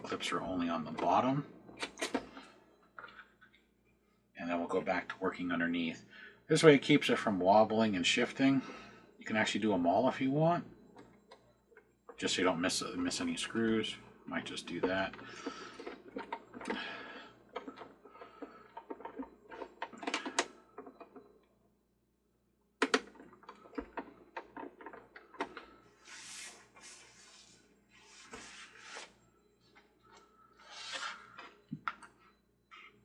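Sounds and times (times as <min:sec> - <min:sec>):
handling clicks and knocks: 0:17.5 - 0:21.3, 0:22.8 - 0:25.7.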